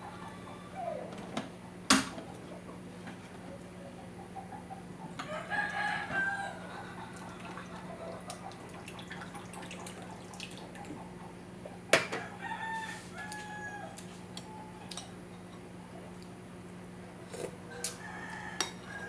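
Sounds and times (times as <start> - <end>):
rooster crowing: 0.0 - 1.1, 5.2 - 7.6, 12.1 - 14.1, 17.7 - 19.0.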